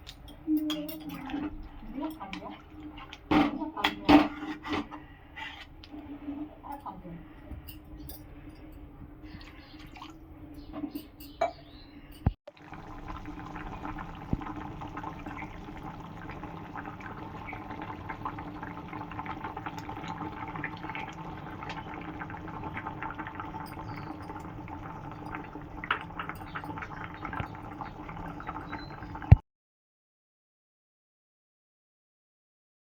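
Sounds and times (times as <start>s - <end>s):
curry bubbling in a pan: 12.5s - 29.4s.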